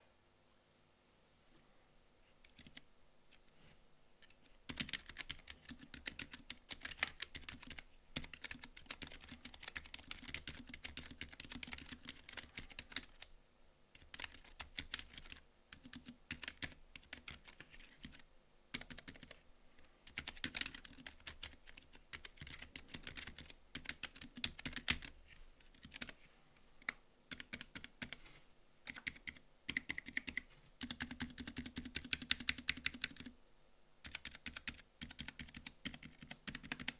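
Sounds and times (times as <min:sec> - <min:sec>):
typing on mechanical keyboard: 0:02.4 - 0:02.8, 0:04.7 - 0:13.3, 0:14.0 - 0:19.4, 0:20.1 - 0:26.2, 0:26.8 - 0:28.2, 0:28.8 - 0:33.3, 0:34.0 - 0:36.9.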